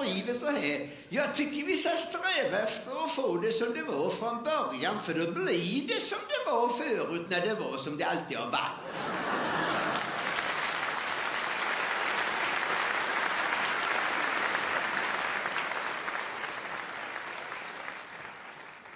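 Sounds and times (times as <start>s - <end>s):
audience applauding: 9.0s - 18.9s.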